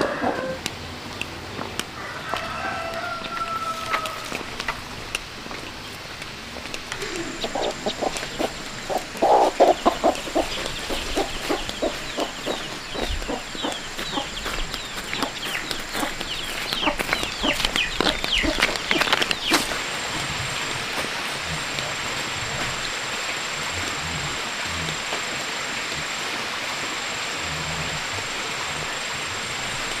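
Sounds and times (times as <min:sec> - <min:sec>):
high calls falling in pitch: 0:00.0 - 0:00.6
chickens clucking: 0:00.0 - 0:30.0.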